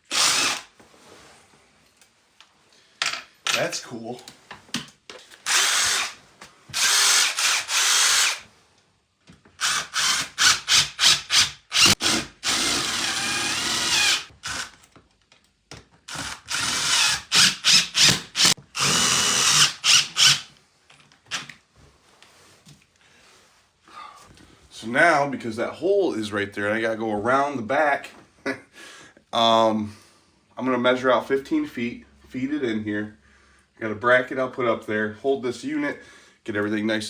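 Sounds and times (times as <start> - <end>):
power drill running: 0.0 - 0.7, 5.4 - 6.2, 6.8 - 8.5, 9.6 - 14.8, 16.1 - 20.5.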